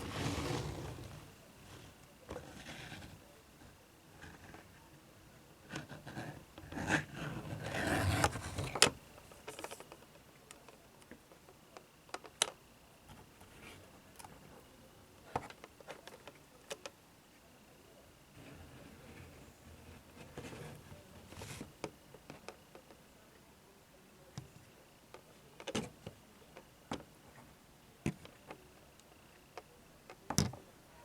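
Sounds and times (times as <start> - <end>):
handling scrapes and rustles: 0.0 - 3.2.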